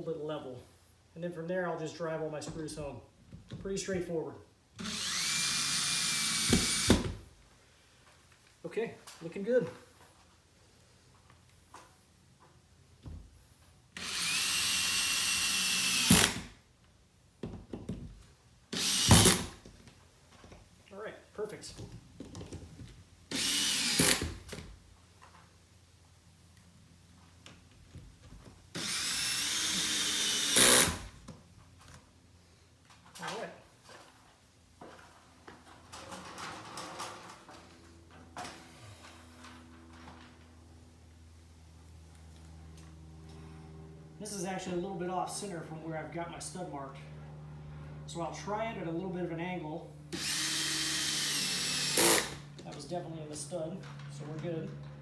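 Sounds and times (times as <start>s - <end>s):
power drill driving screw: 4.8s - 7.2s, 14.0s - 16.6s, 18.7s - 19.7s, 23.3s - 24.6s, 28.7s - 31.2s, 50.1s - 52.5s.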